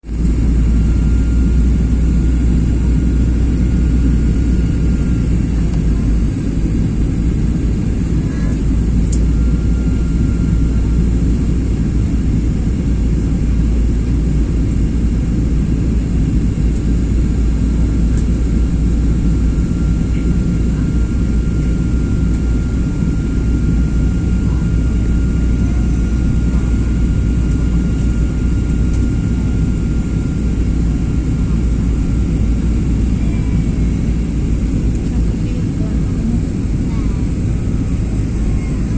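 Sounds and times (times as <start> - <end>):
faint high whine: 0.0 - 11.0
airplane engine rumble in cabin: 0.0 - 38.9.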